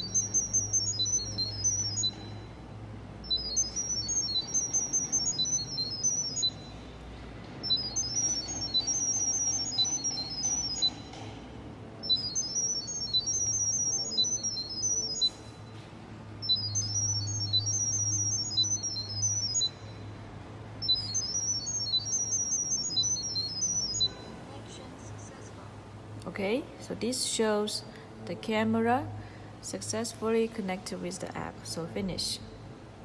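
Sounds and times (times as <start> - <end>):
high electronic pairing beeps: 0.0 - 24.5.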